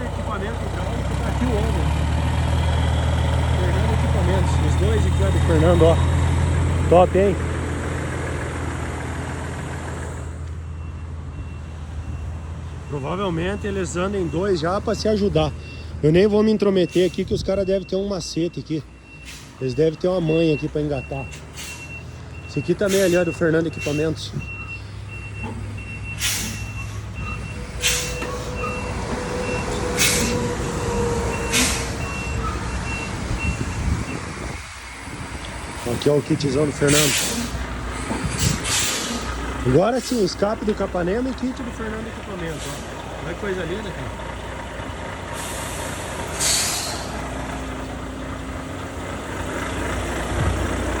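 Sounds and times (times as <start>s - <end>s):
diesel truck engine running: 0.0s - 51.0s
reversing beeper: 3.6s - 6.3s, 10.6s - 34.3s
air brakes hissing: 19.1s - 19.7s, 21.3s - 22.2s, 22.8s - 32.8s, 36.8s - 40.4s, 42.5s - 43.1s, 45.2s - 47.3s
air hiss blasts: 38.4s - 39.3s, 45.4s - 47.2s.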